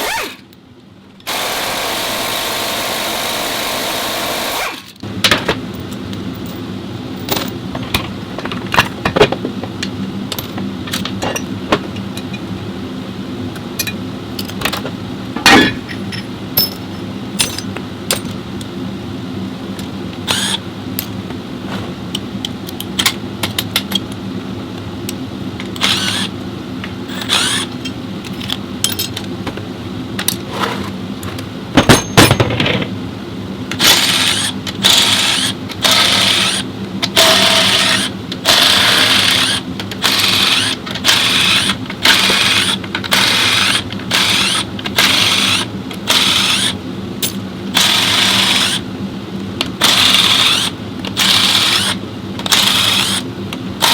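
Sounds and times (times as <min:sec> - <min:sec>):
steady mechanical hum: 0:00.0 - 0:53.9
metal tools clinking and knocking: 0:15.4 - 0:18.3, 0:27.8 - 0:29.2, 0:31.8 - 0:32.9.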